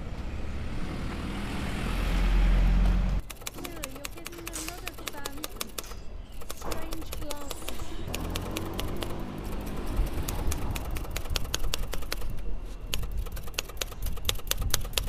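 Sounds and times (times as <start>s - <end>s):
typewriter keys clacking: 3.2s - 15.0s.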